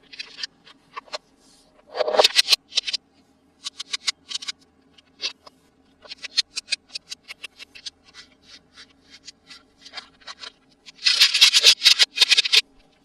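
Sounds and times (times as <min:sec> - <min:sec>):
toy packaging clicks and crackles: 0:03.6 - 0:04.6, 0:06.0 - 0:12.6.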